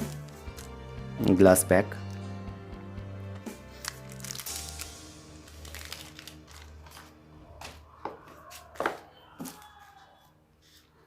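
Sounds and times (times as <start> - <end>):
packaging rustling and crackling: 3.8 - 7.8.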